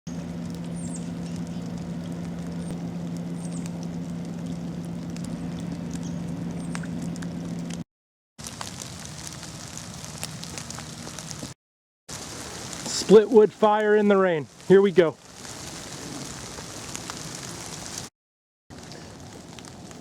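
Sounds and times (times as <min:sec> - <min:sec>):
rain pattering: 0:00.1 - 0:07.8, 0:08.4 - 0:18.1, 0:18.7 - 0:20.0
steady low hum: 0:00.1 - 0:07.8.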